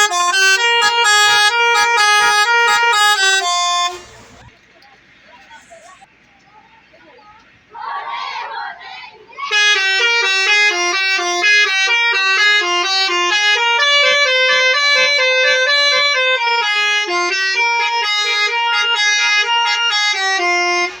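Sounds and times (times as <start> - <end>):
musical air horn melody: 0.0 - 4.5, 9.5 - 21.0.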